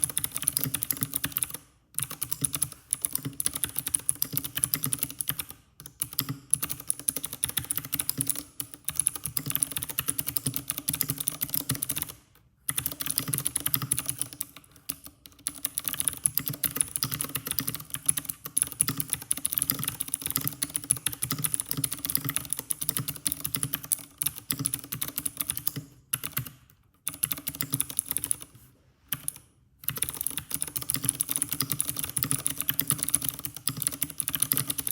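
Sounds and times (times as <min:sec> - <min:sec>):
mechanical keyboard typing: 0:00.0 - 0:34.9.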